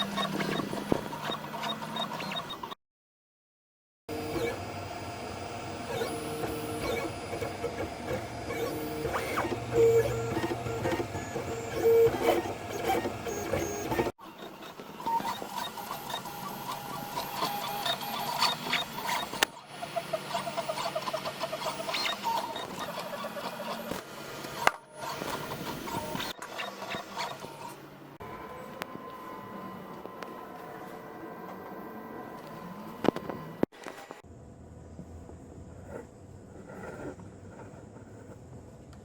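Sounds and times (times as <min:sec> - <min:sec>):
stepper motors whining: 0:04.1 - 0:33.7.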